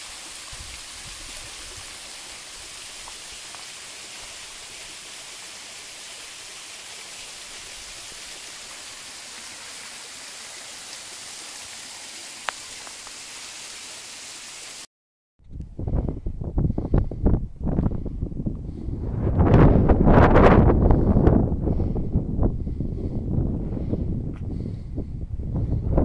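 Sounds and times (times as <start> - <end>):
river water rushing: 0.0 - 14.8
wind buffeting microphone: 15.4 - 26.0.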